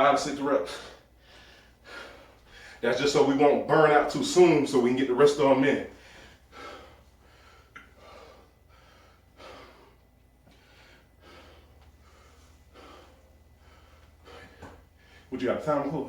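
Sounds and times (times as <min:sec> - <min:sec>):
man breathing hard: 0:00.7 - 0:02.9, 0:05.9 - 0:15.3.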